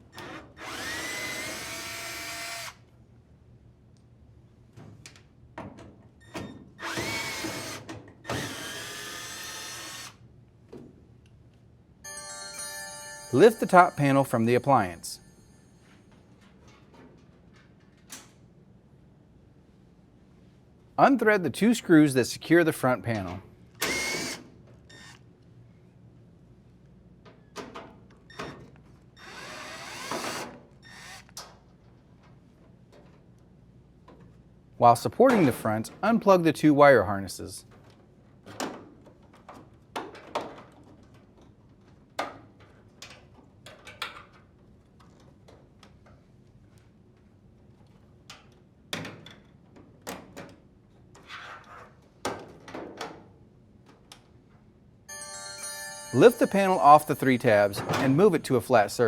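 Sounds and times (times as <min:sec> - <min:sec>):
drill driver motor whine: 0:00.6 - 0:02.8, 0:06.8 - 0:10.1, 0:23.8 - 0:24.4.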